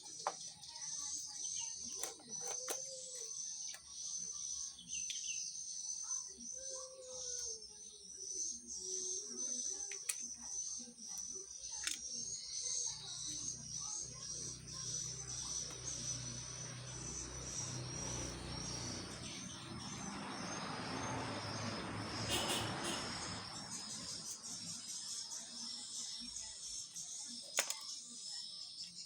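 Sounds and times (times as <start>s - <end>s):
insects trilling: 0.0s - 29.0s.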